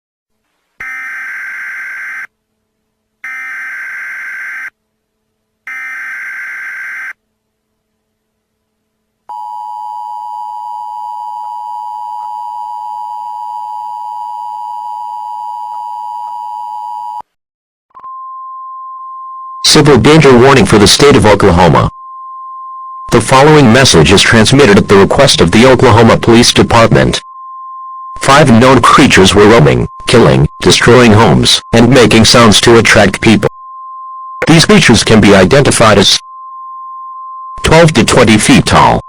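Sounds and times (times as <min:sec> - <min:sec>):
quiet steady tone: 0:17.9 - 0:39.0.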